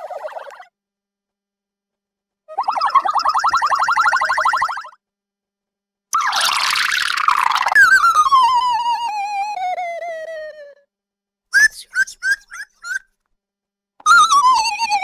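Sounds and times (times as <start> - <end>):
falling whistle-like tone: 7.7 - 10.3, 11.6 - 13.0.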